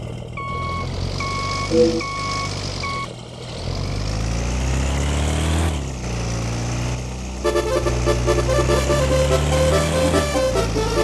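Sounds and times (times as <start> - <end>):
bus engine revving: 0.0 - 11.0
reversing alarm beep: 0.4 - 3.1.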